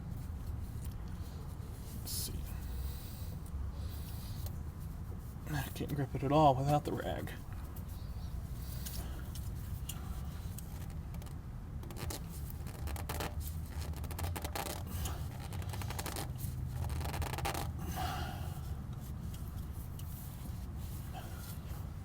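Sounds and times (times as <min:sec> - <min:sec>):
rag rubbing on oil filter: 0:11.9 - 0:22.0
small scuffs and clicks: 0:18.9 - 0:22.0.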